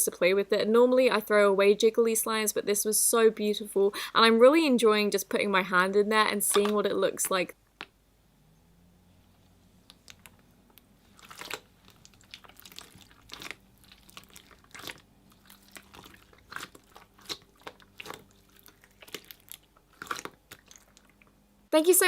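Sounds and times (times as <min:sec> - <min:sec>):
hand squishing wet slime: 0:09.8 - 0:21.4.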